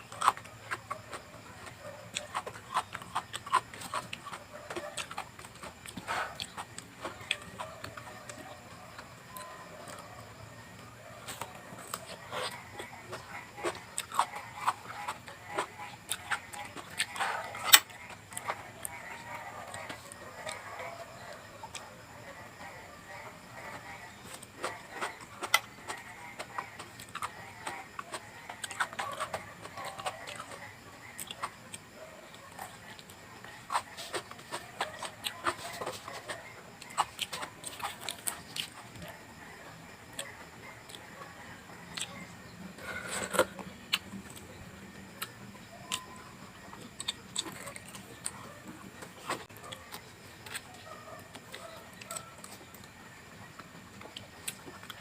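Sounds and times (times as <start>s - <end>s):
vegetables being bitten and chewed: 0.0s - 55.0s.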